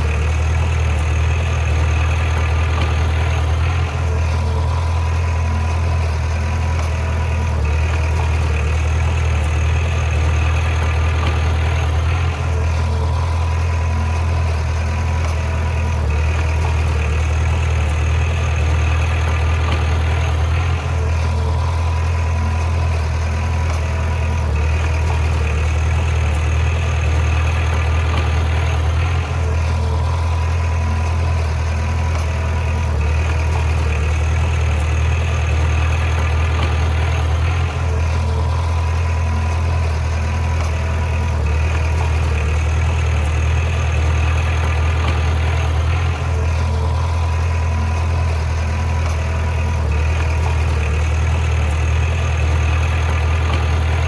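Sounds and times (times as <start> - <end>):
heavy diesel engine running: 0.0 - 54.0.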